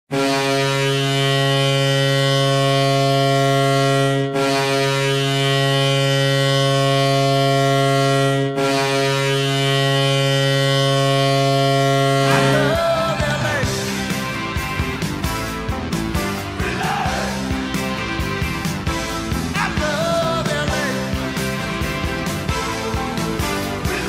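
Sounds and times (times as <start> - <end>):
loud low goal horn: 0.1 - 14.8, 15.4 - 24.0
music: 12.2 - 24.0.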